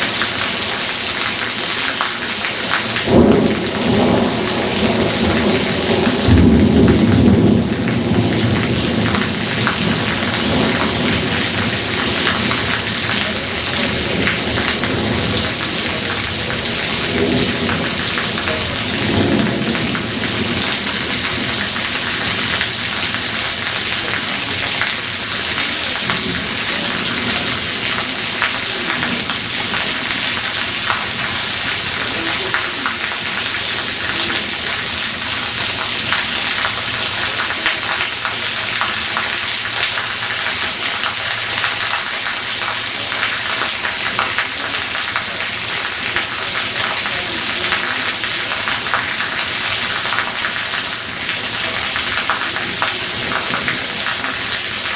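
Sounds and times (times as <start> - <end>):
heavy rain downpour: 0.0 - 54.9
thunder rumbling: 2.8 - 38.3.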